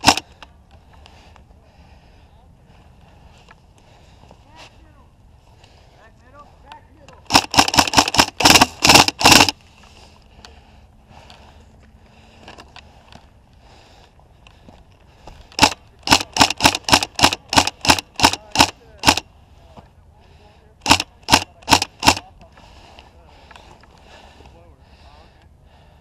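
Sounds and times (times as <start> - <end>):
airsoft gun shots: 0.0 - 0.2, 7.3 - 9.6, 15.6 - 19.2, 20.8 - 22.2.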